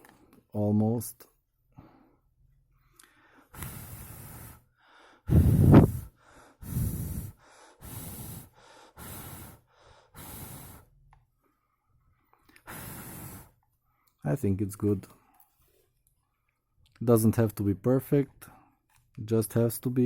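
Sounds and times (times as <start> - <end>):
loud breaths into microphone: 3.0 - 11.6, 12.5 - 14.1.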